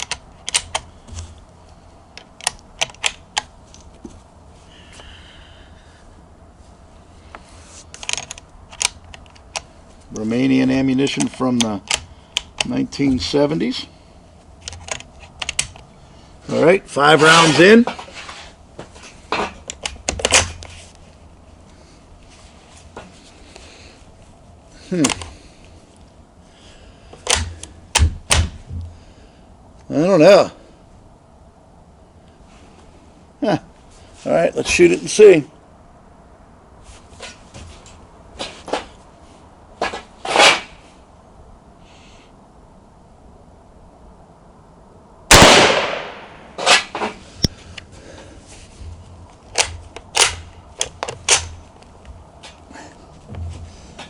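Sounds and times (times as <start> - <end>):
rifle bolt metallic clicks: 0.0 - 0.9, 2.2 - 3.5, 8.0 - 9.7, 14.6 - 15.9.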